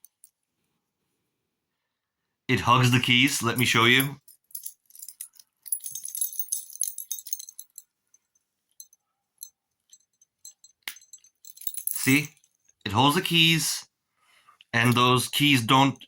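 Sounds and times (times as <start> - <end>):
keys jingling: 0.0 - 0.3, 3.4 - 12.7, 14.8 - 15.4.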